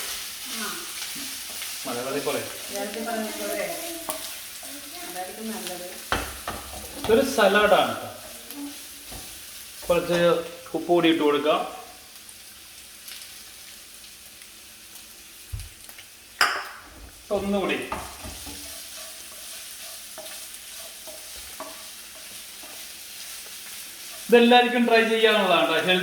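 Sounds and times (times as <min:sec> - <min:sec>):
beans sizzling in a pan: 0:00.0 - 0:26.0
stirring scrapes and ticks: 0:17.9 - 0:24.5.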